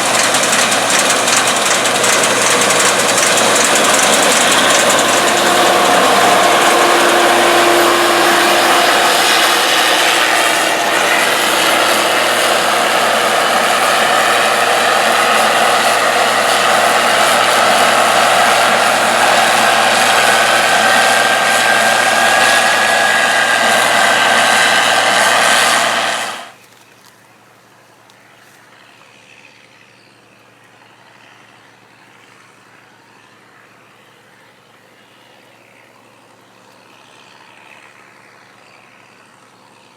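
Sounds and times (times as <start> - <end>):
heavy machinery engine din: 0.0 - 26.6.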